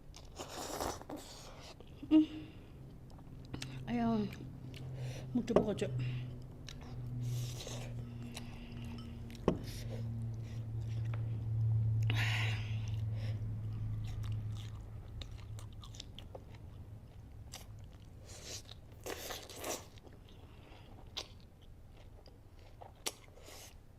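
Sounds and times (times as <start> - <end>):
eating and chewing noodles: 0.0 - 5.3, 6.2 - 23.9
low hum: 1.8 - 18.2.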